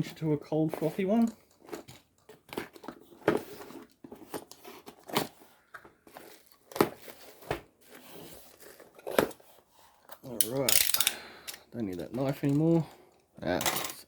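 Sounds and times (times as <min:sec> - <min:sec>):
packaging crinkling and tearing: 0:01.4 - 0:10.7.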